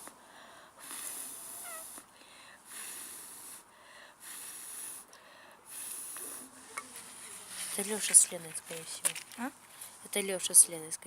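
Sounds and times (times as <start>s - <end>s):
insect buzzing: 0.8s - 2.0s.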